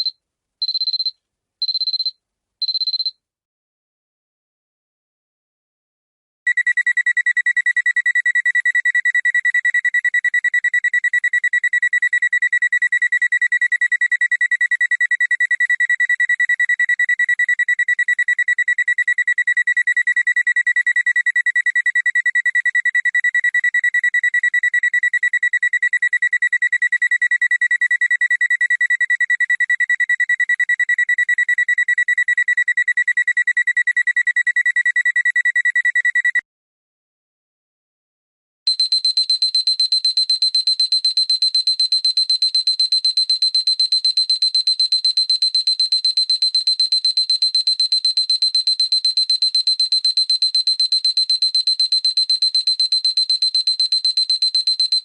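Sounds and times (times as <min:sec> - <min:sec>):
alarm clock beeping: 0:00.0 - 0:03.1.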